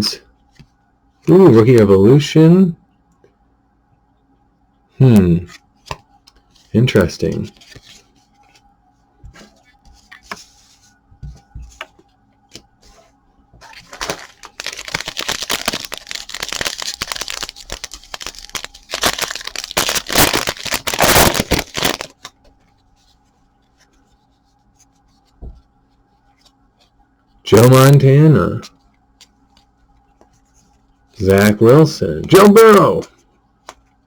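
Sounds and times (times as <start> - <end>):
plastic wrapper tearing and crinkling: 13.6 - 22.2.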